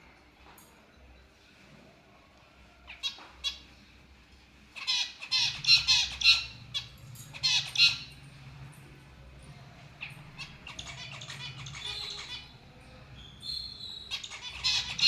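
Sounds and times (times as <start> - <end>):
lovebirds squawking: 4.8 - 8.2, 10.0 - 15.0.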